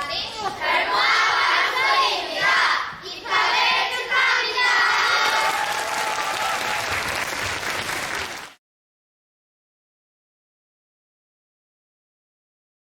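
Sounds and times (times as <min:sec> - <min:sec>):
audience applauding: 0:04.9 - 0:08.6.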